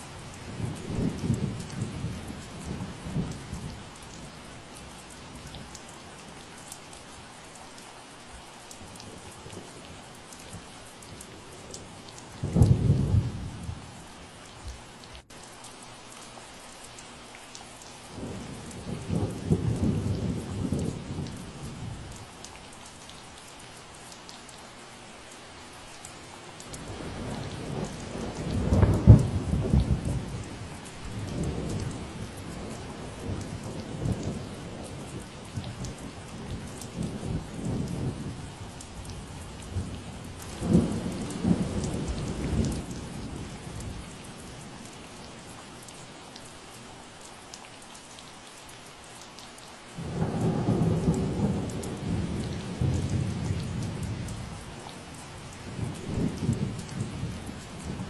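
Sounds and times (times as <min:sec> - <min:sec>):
steady rain falling: 0:00.0 - 0:58.0
rolling thunder: 0:12.4 - 0:13.7, 0:26.8 - 0:30.5, 0:39.7 - 0:44.0, 0:50.0 - 0:54.7.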